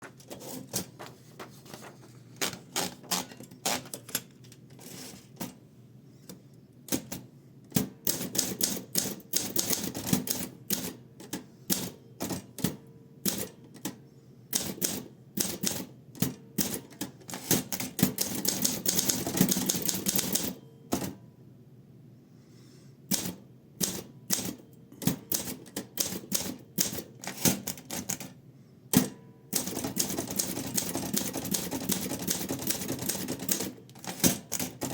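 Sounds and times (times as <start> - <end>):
typewriter keystroke clacks: 6.9 - 14.0, 14.6 - 21.1, 29.0 - 34.9.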